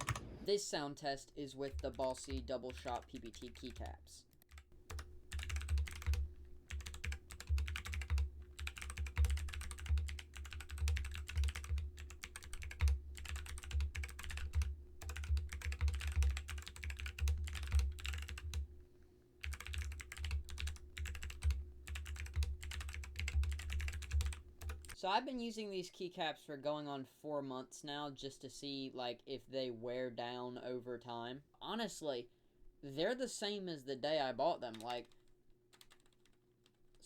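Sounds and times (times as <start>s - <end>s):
mechanical keyboard typing: 0.0s - 0.4s, 1.6s - 18.6s, 19.4s - 25.0s, 35.8s - 36.4s.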